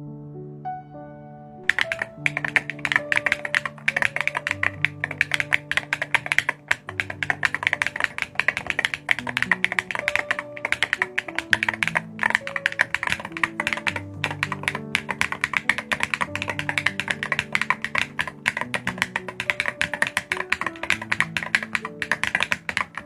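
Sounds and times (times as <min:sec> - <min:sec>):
mechanical keyboard key clacks: 0:01.7 - 0:23.0.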